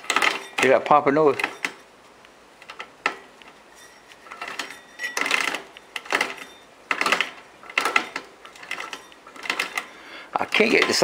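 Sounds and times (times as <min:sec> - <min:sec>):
chain rattling against sprocket: 0:03.8 - 0:11.0.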